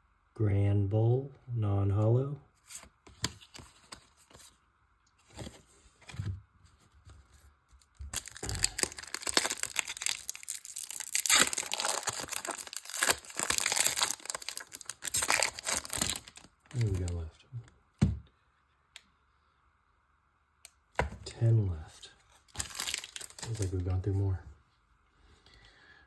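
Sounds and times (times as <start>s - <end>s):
soft handling sounds: 2.5s - 19.1s, 21.0s - 25.0s
foil wrapper tearing and crinkling: 8.1s - 17.2s, 22.5s - 23.8s.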